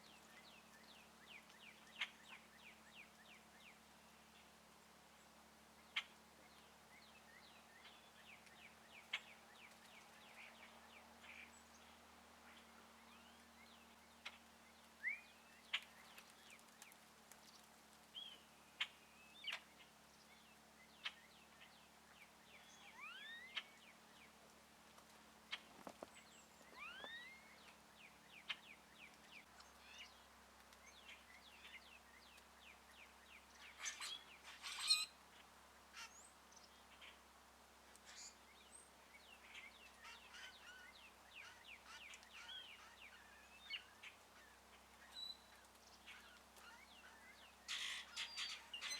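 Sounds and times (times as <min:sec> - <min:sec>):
birds chirping: 0:25.5 - 0:37.2.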